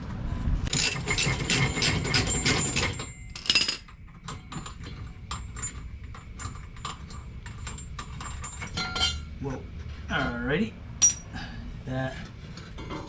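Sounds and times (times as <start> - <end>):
metallic clink: 11.0 - 11.3.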